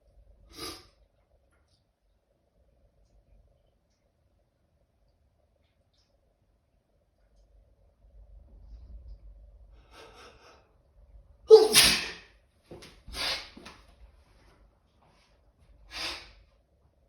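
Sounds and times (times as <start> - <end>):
person sneezing: 11.5 - 12.3
short bursts of breath: 13.1 - 13.6, 15.9 - 16.4.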